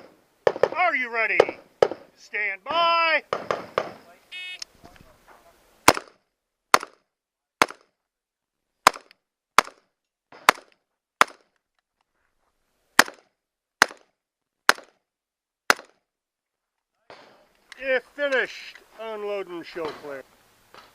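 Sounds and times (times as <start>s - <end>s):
gunshots: 0.0s - 2.1s, 3.3s - 4.1s, 5.8s - 7.0s, 7.6s - 7.9s, 8.8s - 11.5s, 13.0s - 14.1s, 14.7s - 15.0s, 15.7s - 16.0s.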